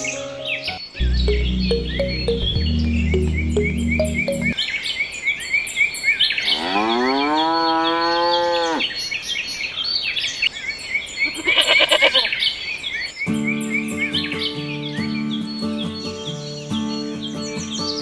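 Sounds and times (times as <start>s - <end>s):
bird chirping: 0.0s - 4.6s.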